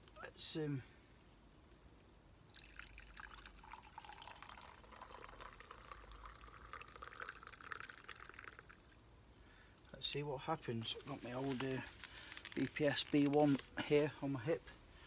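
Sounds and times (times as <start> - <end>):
coffee pouring into a cup: 2.5 - 9.0.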